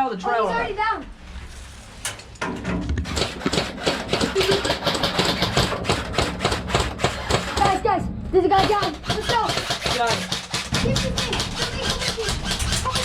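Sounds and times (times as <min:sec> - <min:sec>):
airsoft guns firing: 0:08.6 - 0:12.8.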